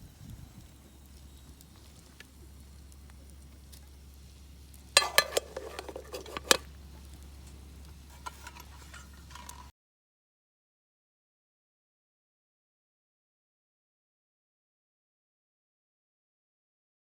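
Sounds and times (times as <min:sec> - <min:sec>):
metal cookware clattering: 0:05.0 - 0:06.7, 0:08.1 - 0:09.7.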